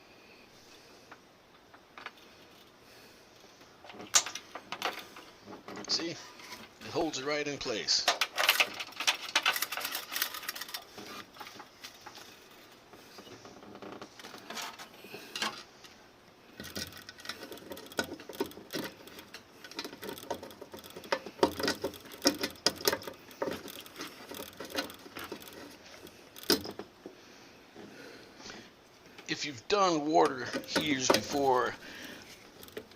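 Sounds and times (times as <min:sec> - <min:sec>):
small metal parts clicking and rattling: 0:03.8 - 0:07.0, 0:07.7 - 0:27.0, 0:30.2 - 0:32.9.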